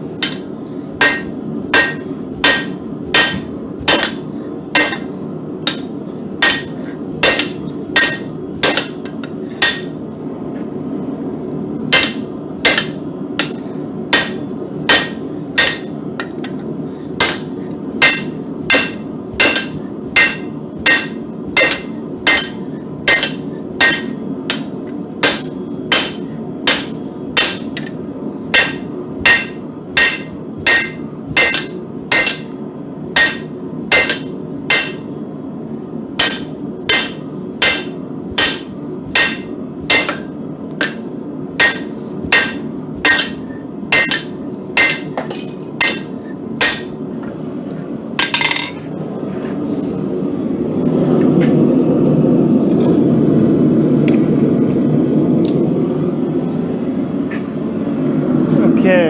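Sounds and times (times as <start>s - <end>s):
hammer striking steel on anvil: 0.2s - 10.1s, 11.9s - 32.6s, 33.2s - 35.2s, 36.2s - 47.4s, 48.2s - 48.8s.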